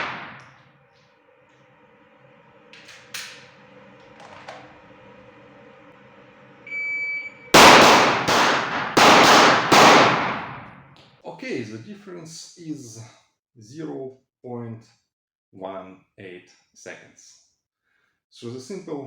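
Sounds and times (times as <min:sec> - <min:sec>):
pistol shots: 0:00.0 - 0:00.4, 0:07.6 - 0:10.9
shot timer beep: 0:06.6 - 0:08.2.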